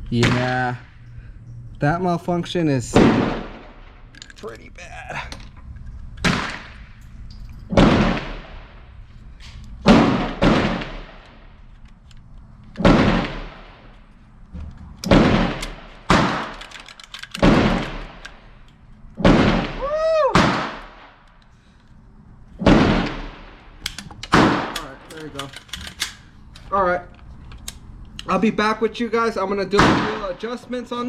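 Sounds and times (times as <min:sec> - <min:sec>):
gunshots with long echo: 0:02.9 - 0:04.0, 0:06.2 - 0:07.0, 0:07.7 - 0:08.9, 0:09.8 - 0:11.6, 0:12.8 - 0:13.9, 0:15.1 - 0:16.6, 0:19.2 - 0:21.2, 0:22.6 - 0:25.0, 0:29.7 - 0:30.4.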